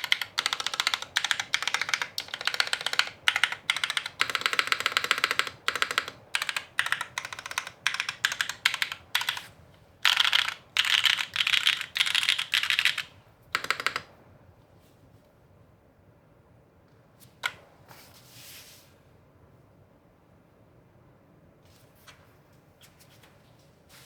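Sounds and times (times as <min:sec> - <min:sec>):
mechanical keyboard typing: 0:00.0 - 0:14.1.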